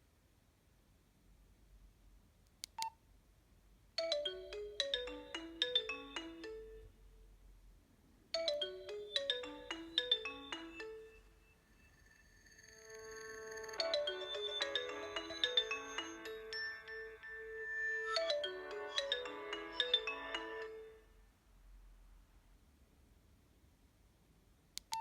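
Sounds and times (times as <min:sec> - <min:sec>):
mobile phone ringtone: 0:04.0 - 0:06.9, 0:08.4 - 0:21.0.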